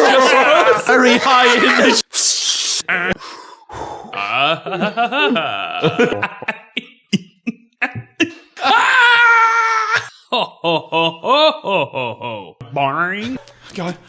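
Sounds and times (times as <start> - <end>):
man making vocal sound effects: 0.8 - 3.2, 3.9 - 4.8, 5.4 - 6.5, 7.2 - 8.7.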